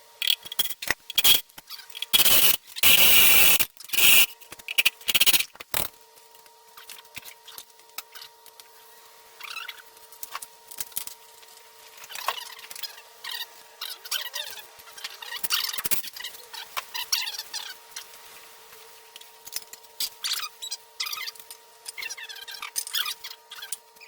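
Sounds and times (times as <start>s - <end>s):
steady hum: 0.0s - 5.9s.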